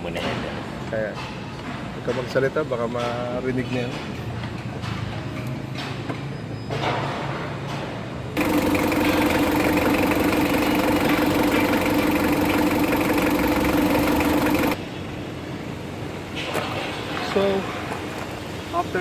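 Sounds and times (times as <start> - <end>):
diesel engine revving: 8.4 - 14.8.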